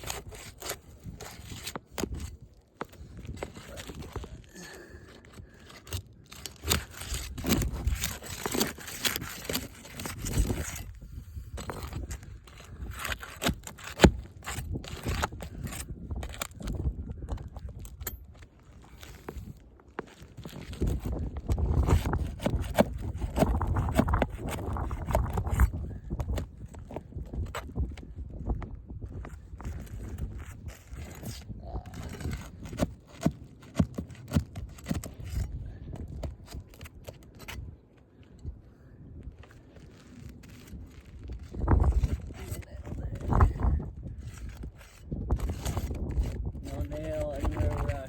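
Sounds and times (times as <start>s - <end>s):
roof shingles scraping and crunching: 0.0s - 48.0s
low rumble on microphone: 20.8s - 32.8s, 40.5s - 48.0s.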